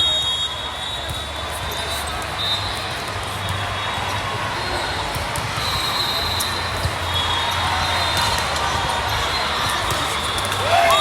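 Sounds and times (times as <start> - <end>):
sports hall din: 0.0 - 11.0
volleyball hits: 2.8 - 11.0.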